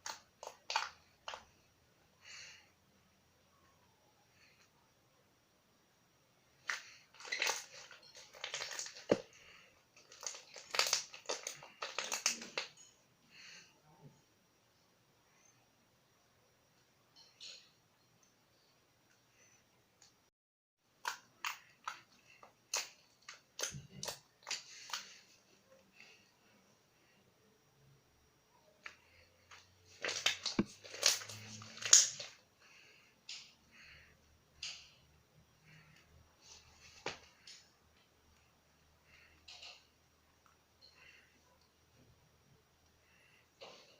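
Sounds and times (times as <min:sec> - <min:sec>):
slime squishing and crackling: 0:00.0 - 0:01.5, 0:06.6 - 0:12.8, 0:29.9 - 0:32.4.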